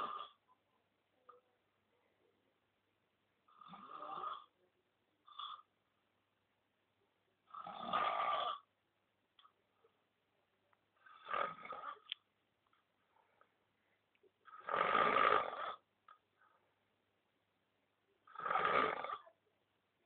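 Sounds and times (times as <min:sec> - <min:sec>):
snoring with whistling note: 0:07.6 - 0:08.6, 0:14.5 - 0:15.8, 0:18.3 - 0:19.2.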